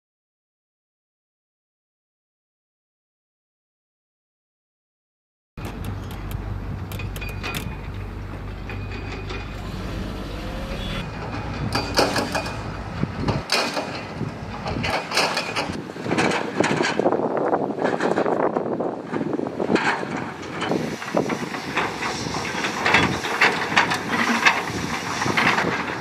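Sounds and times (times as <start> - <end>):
diesel engine droning: 5.6 - 13.4
machinery clanks and knocks: 5.6 - 17.0.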